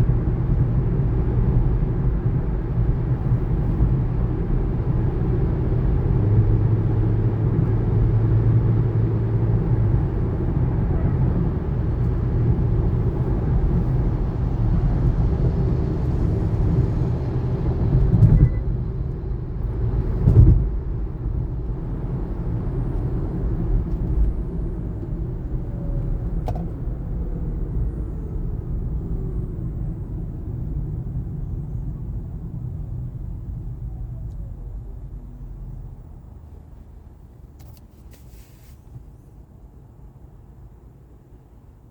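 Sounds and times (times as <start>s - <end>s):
road and tyre rumble: 0.0s - 41.9s
faint brake whine: 17.8s - 19.7s, 22.9s - 39.6s.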